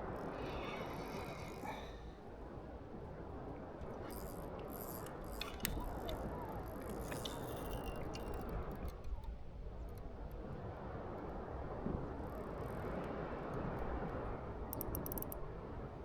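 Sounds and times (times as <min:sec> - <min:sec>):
small clicks and ticks: 0:03.6 - 0:15.5.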